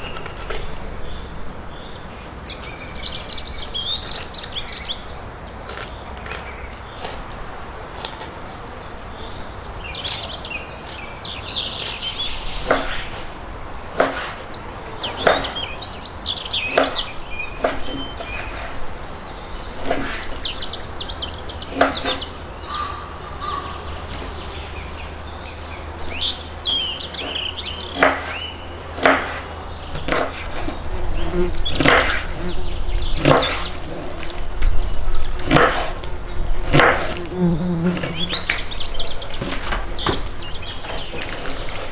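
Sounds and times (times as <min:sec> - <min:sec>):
songbirds chirping: 0:00.0 - 0:41.9
sharp knocks: 0:29.0 - 0:29.4.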